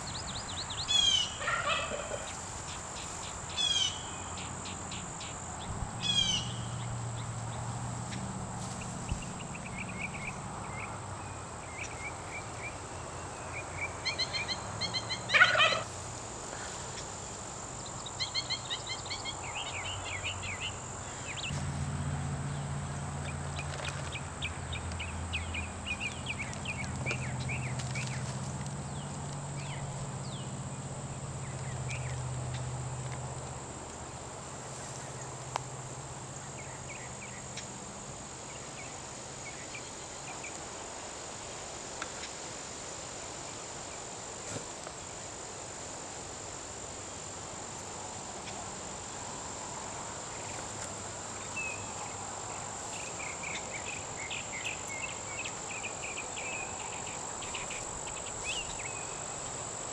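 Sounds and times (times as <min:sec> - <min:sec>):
downward-sweeping bird calls: 0:00.0 - 0:05.3, 0:06.0 - 0:06.9, 0:13.8 - 0:15.9
birds chirping: 0:00.0 - 0:08.2.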